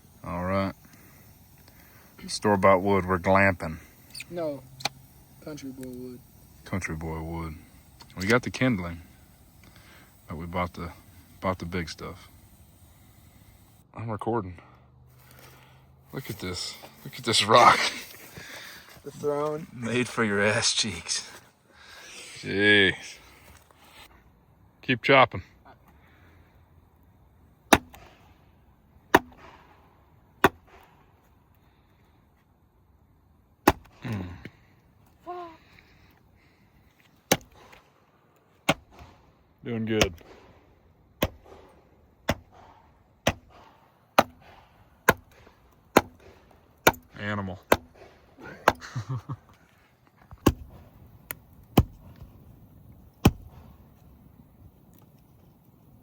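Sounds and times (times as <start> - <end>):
axe chopping wood: 27.7 - 28.2, 29.1 - 29.6, 30.4 - 31.0, 33.6 - 34.1, 37.3 - 37.8, 38.6 - 39.2, 40.0 - 40.4, 41.2 - 48.9, 50.3 - 50.8, 51.7 - 52.3, 53.2 - 53.7.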